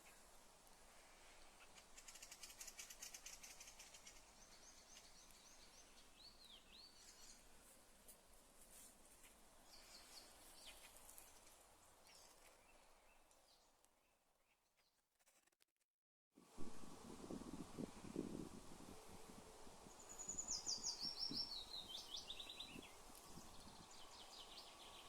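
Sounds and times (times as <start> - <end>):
faint forest background hiss: 0.0 - 14.7, 16.4 - 25.0
nightingale singing: 19.9 - 25.0.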